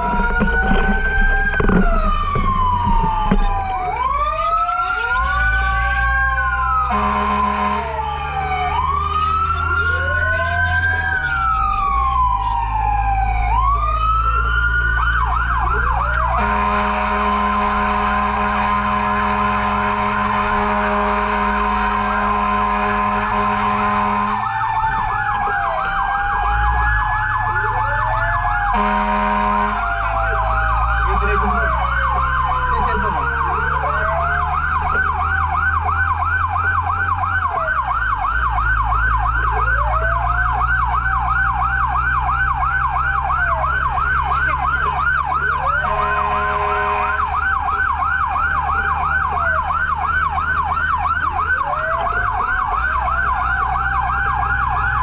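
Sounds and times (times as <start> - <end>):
fire truck sirens wailing and yelping: 0.0 - 55.0
truck engine rumble: 0.0 - 55.0
fire truck horn blast: 5.0 - 8.2, 16.2 - 24.7, 28.6 - 34.5, 44.2 - 47.8.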